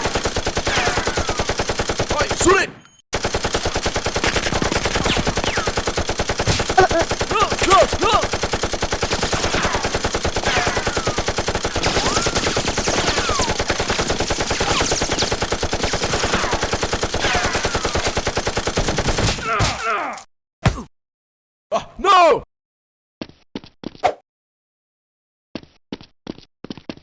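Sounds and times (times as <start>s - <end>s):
rapid automatic gunfire: 0.0s - 19.4s.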